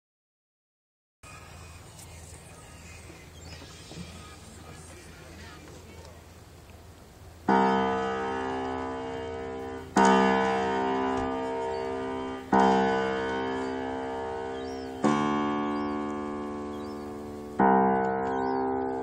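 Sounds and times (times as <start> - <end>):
out of tune piano chords: 7.3 - 19.0.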